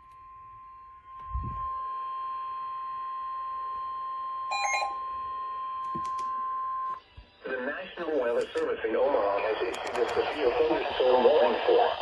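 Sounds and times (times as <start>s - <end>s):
steady high alarm tone: 0.0s - 8.3s
short multi-pitch beep: 4.4s - 5.1s.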